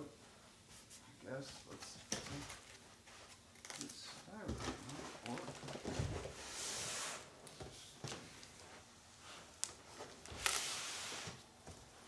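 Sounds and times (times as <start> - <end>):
styrofoam and plastic rustling: 10.0 - 11.4.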